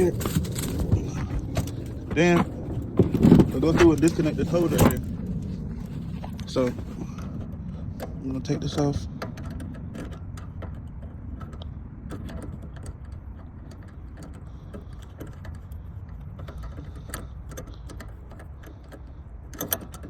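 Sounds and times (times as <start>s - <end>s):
sharp clatter: 0.0s - 7.4s
steady low rumble: 0.0s - 19.5s
metallic clicks and rattles: 0.0s - 20.0s.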